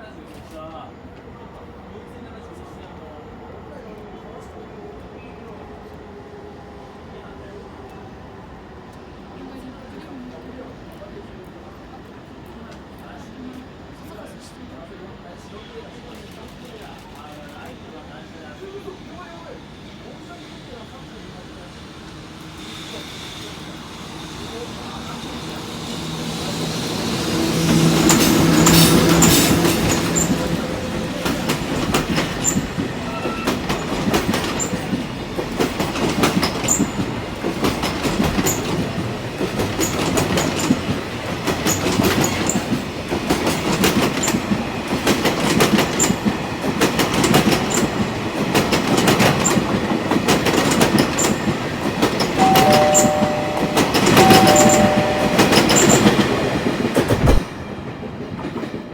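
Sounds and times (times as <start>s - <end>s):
wheels clickety-clack: 27.6s - 57.5s
two steady tones: 52.4s - 56.3s.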